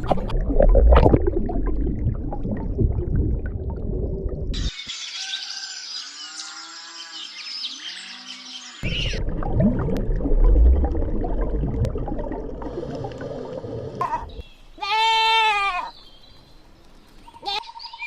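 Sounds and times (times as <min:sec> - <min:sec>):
low rumble: 0:09.2 - 0:14.4
animal cries: 0:14.0 - 0:16.0.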